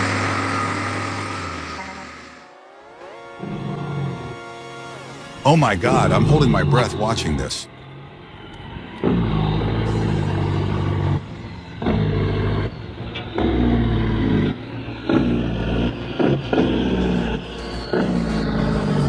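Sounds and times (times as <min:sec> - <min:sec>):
engine revving: 0:00.0 - 0:02.6, 0:08.2 - 0:19.0.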